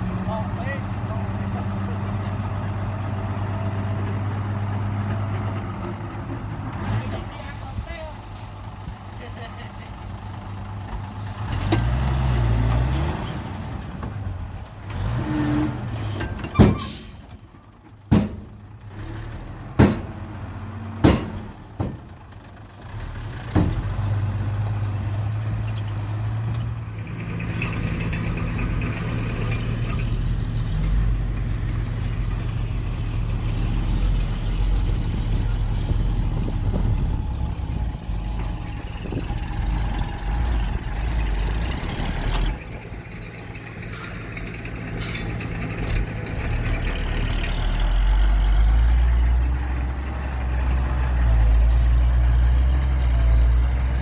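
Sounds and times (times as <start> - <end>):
heavy diesel engine running: 26.3 - 54.0.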